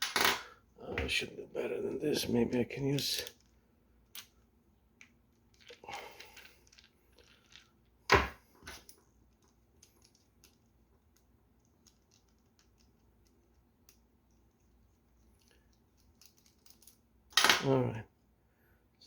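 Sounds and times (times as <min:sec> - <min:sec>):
clicks and rattles of small parts: 0:05.0 - 0:07.8, 0:08.6 - 0:14.6, 0:15.2 - 0:17.7.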